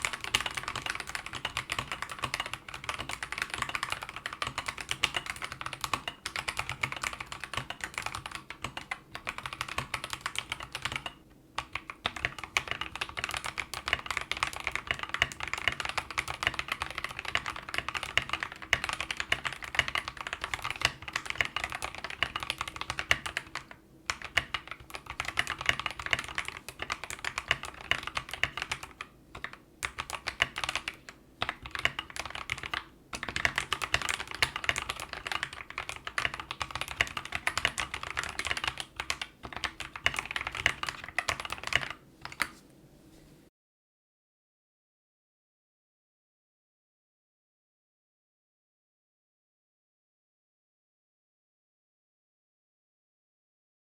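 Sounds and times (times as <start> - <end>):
fast mechanical keyboard typing: 0.0 - 42.5.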